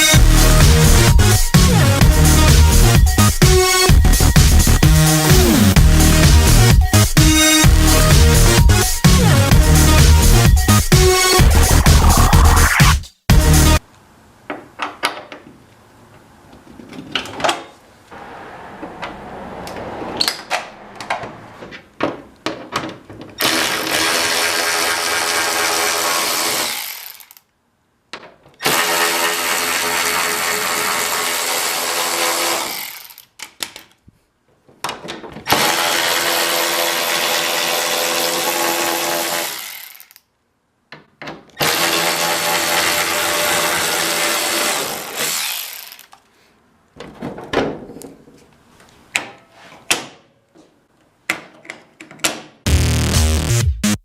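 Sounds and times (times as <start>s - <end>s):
clicks and knocks of parts: 33.1s - 34.0s
power drill running: 41.6s - 46.1s.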